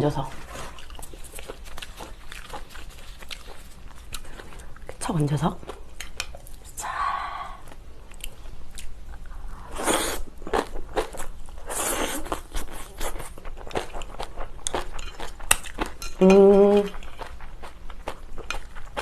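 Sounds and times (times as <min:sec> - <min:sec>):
crunchy chewing: 0:00.5 - 0:05.0, 0:07.7 - 0:16.0
person humming: 0:16.2 - 0:16.9.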